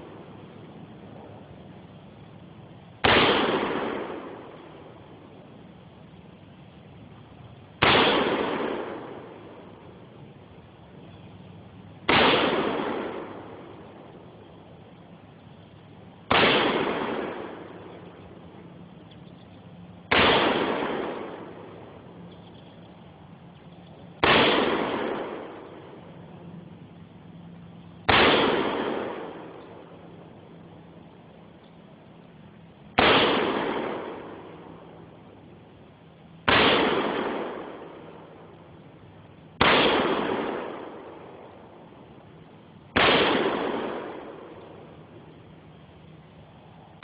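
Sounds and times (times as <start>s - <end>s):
rifle shots with echo: 3.0s - 5.4s, 7.8s - 10.0s, 12.0s - 22.9s, 23.5s - 26.6s, 27.6s - 30.8s, 32.8s - 35.4s, 36.4s - 46.0s.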